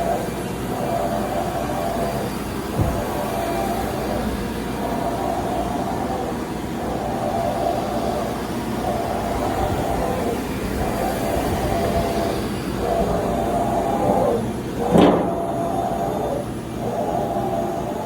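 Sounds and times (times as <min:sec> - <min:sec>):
surface grinder whine: 0:00.0 - 0:18.0.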